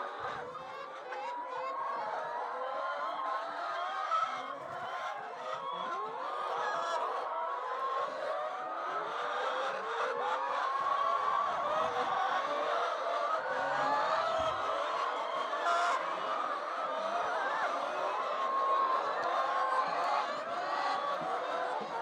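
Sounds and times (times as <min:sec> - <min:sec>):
chickens calling: 0:00.0 - 0:22.0.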